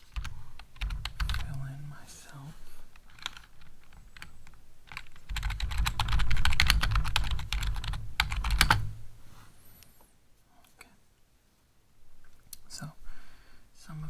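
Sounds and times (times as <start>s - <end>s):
typing on computer keyboard: 0.2s - 1.6s, 3.0s - 8.9s.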